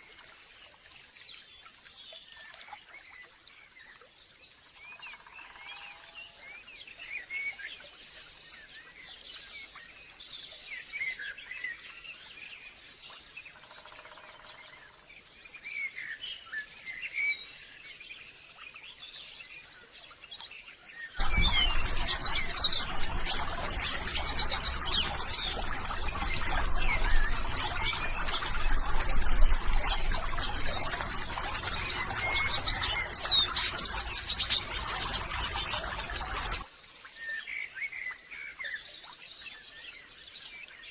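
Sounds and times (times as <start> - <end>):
birds chirping: 21.2 - 36.6
steady hiss: 21.2 - 36.6.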